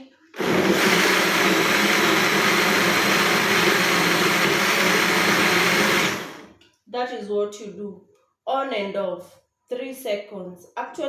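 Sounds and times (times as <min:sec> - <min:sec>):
electric blender motor running: 0:00.4 - 0:06.6.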